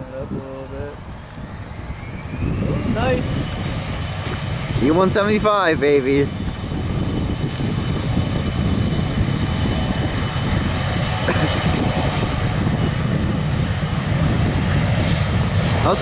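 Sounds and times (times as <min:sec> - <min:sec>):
faint high whine: 0:00.0 - 0:06.4
jet engine noise: 0:00.0 - 0:16.0.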